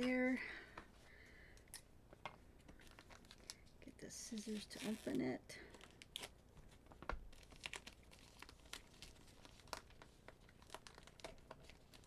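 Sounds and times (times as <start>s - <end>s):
small clicks and crackles: 1.5s - 3.8s, 4.4s - 12.0s
packaging crinkling: 2.7s - 3.8s, 4.4s - 12.0s.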